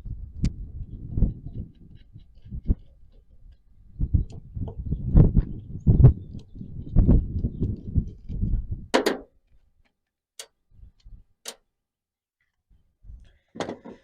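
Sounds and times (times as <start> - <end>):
plastic parts rubbing and knocking: 1.4 - 5.6, 13.5 - 14.0.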